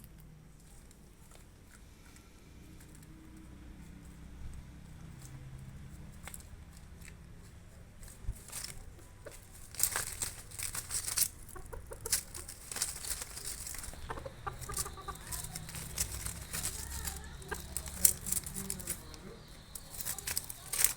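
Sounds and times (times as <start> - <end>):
sharp clicks and crackles: 4.5 - 20.9
chicken clucking: 7.7 - 20.9.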